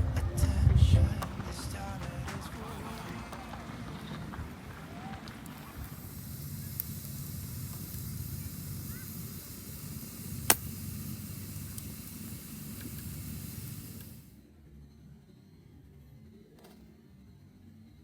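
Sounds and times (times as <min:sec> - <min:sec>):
campfire burning: 0:00.0 - 0:14.3
fire popping: 0:00.0 - 0:14.3
faint fire crackles: 0:00.0 - 0:14.4.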